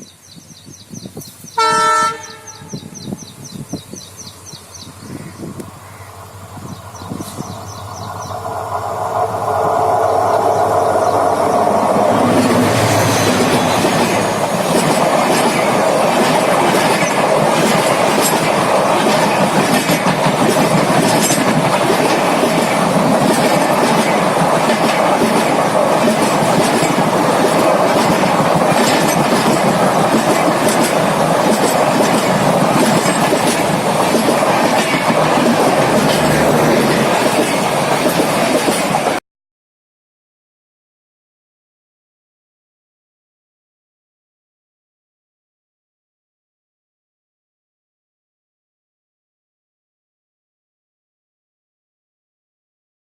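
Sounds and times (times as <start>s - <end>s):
train passing at speed: 0.1s - 39.2s
wheels clacking over rail joints: 12.0s - 39.2s.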